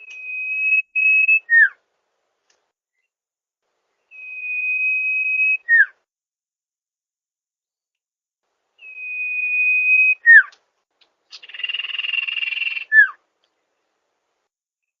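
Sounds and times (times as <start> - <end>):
bird whistle call: 4.1 - 6.0, 8.8 - 10.6, 11.3 - 13.2.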